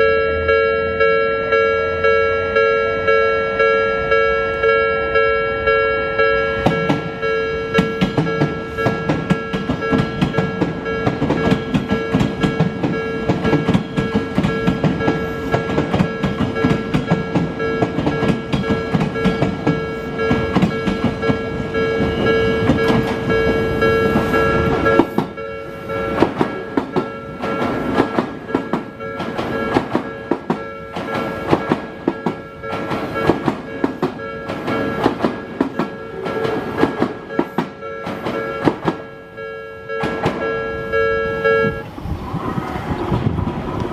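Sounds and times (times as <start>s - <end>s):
level crossing bell ringing: 0.0s - 41.8s
train wheels clattering: 6.6s - 39.2s, 39.9s - 40.7s.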